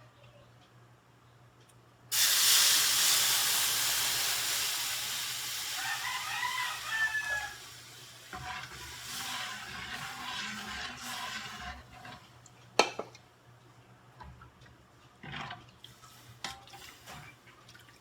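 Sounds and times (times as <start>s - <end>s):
water sizzling in hot pan: 2.1s - 12.2s
rooster crowing: 5.6s - 7.9s.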